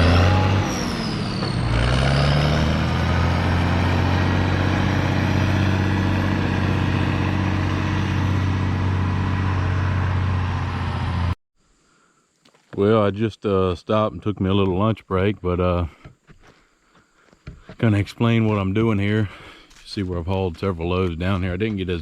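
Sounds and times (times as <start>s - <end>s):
diesel truck engine running: 0.0s - 11.4s.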